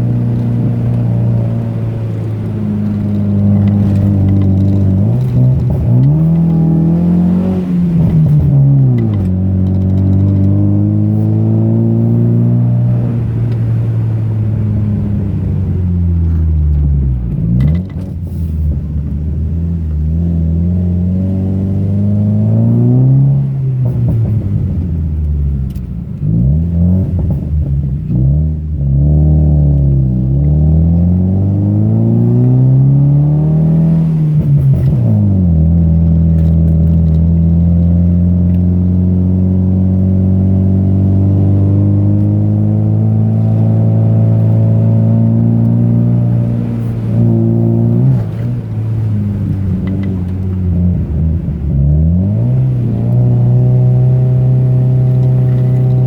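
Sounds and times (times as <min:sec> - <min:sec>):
car engine revving: 0:00.0 - 0:56.0.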